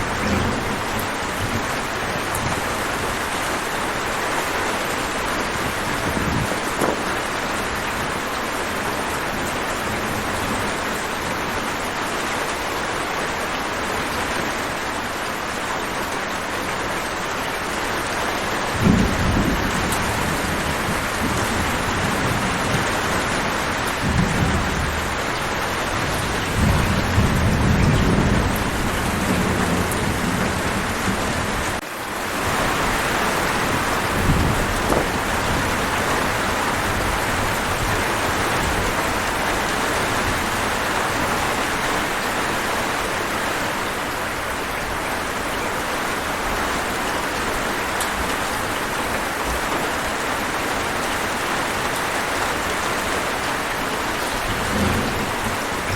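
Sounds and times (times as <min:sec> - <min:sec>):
thunder rumbling: 0:00.0 - 0:11.8, 0:18.6 - 0:31.8, 0:32.4 - 0:42.3, 0:53.4 - 0:55.9
heavy rain: 0:00.0 - 0:55.9.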